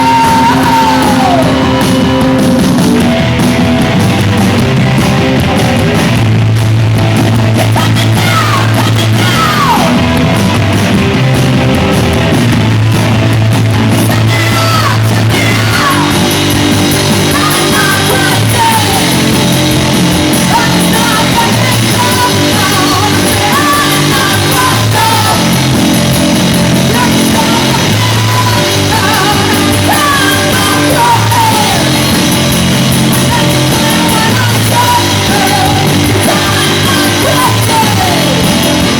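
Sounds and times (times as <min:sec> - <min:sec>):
person singing and shouting: 0:00.0 - 0:03.0, 0:07.5 - 0:10.2, 0:13.8 - 0:38.9
bass guitar: 0:00.0 - 0:38.9
distorted electric guitar: 0:00.0 - 0:38.9
drums: 0:00.0 - 0:38.9.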